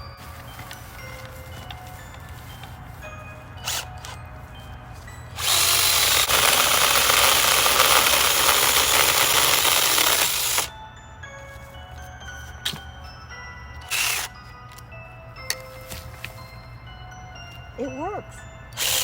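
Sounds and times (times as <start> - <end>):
cordless mini chainsaw running: 3.6 - 4.2, 5.4 - 10.7, 13.9 - 14.3, 18.8 - 19.0.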